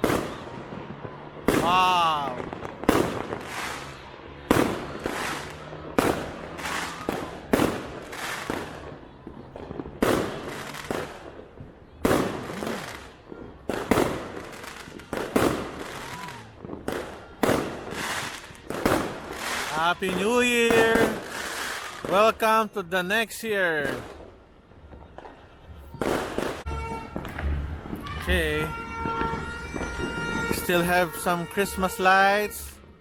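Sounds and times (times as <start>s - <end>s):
fireworks exploding with echo: 0.0s - 33.0s.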